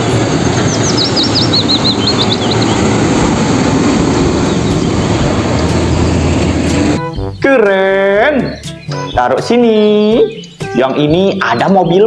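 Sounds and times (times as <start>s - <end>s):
loud rumbling noise: 0.0s - 7.1s.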